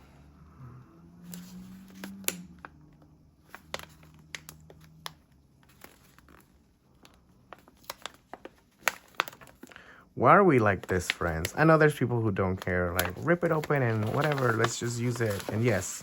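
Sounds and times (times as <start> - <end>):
packaging crinkling: 3.4 - 9.9, 10.6 - 16.0.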